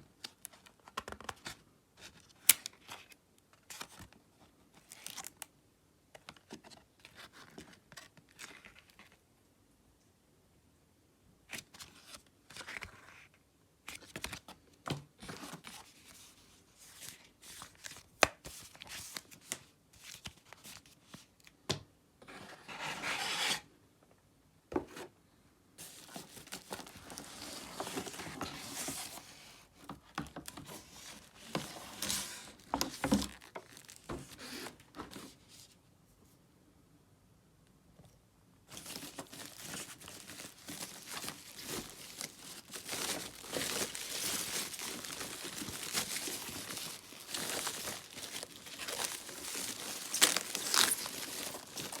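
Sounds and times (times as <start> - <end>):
paper and plastic tearing and crinkling: 25.8 - 29.2, 30.4 - 35.3, 38.7 - 52.0.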